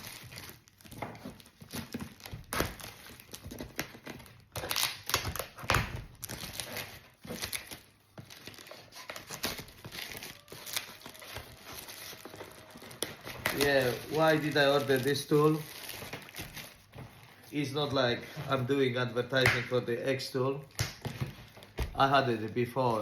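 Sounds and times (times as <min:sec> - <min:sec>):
wrapping tearing: 0:00.0 - 0:20.8
packaging crinkling and rustling: 0:00.0 - 0:23.0.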